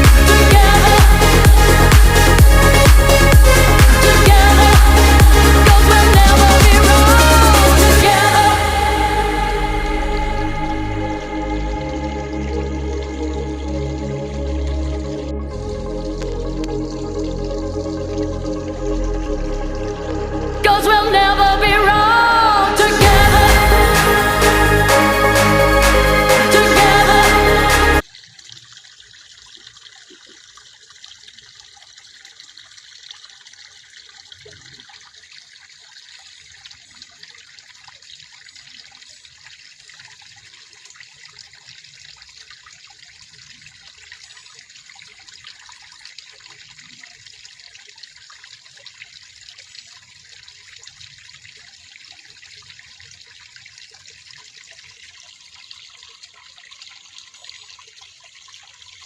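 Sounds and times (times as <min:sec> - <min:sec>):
water trickling and lapping: 0:28.0 - 0:59.0.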